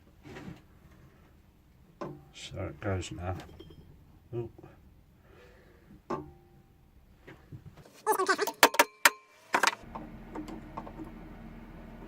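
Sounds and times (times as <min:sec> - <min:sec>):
low machine hum: 0:09.8 - 0:12.0.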